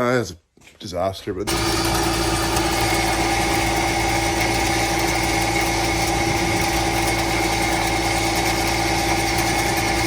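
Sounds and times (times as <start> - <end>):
engine running with whine: 1.5 - 10.0.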